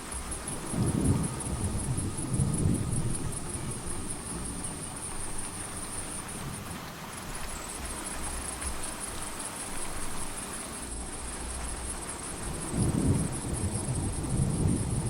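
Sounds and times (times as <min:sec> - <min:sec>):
high cricket trill: 0:00.0 - 0:15.0
steady hiss of rain: 0:00.0 - 0:15.0
distant thunder rumble: 0:00.1 - 0:06.8, 0:11.3 - 0:15.0.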